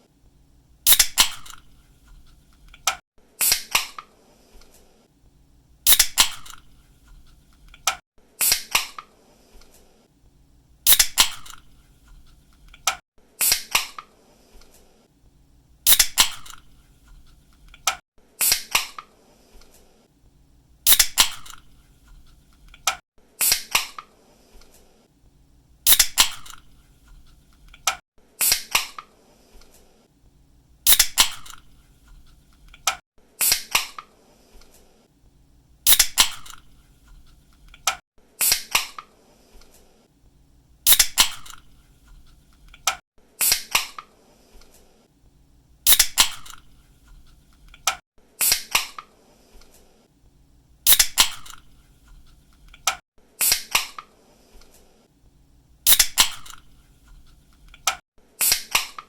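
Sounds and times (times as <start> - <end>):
can pull tab snapping open: 0.9 - 1.6, 5.9 - 6.6, 10.9 - 11.6, 15.9 - 16.6, 20.9 - 21.6, 25.9 - 26.6, 30.9 - 31.6, 35.9 - 36.6, 40.9 - 41.6, 45.9 - 46.6, 50.9 - 51.6, 55.9 - 56.6.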